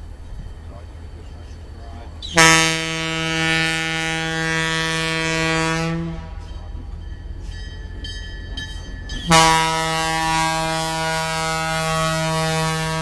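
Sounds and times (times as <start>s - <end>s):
locomotive air horn blast: 2.3s - 6.4s, 9.3s - 13.0s.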